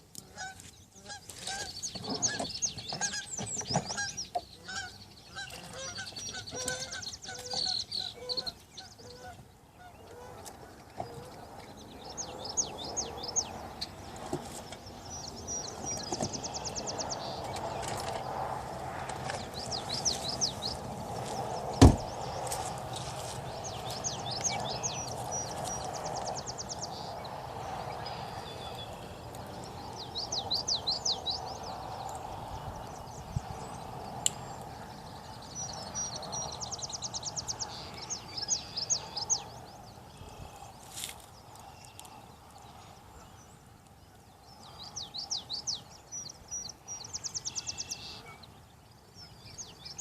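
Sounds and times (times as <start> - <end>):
songbird singing: 0.0 - 50.0
steady background noise: 0.0 - 50.0
sharp knock: 21.8 - 22.0.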